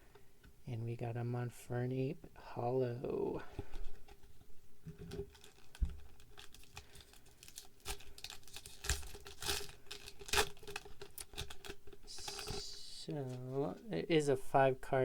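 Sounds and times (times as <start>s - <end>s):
clicks and rustles of cards: 5.0s - 12.6s
foil wrapper tearing and crinkling: 5.2s - 12.7s.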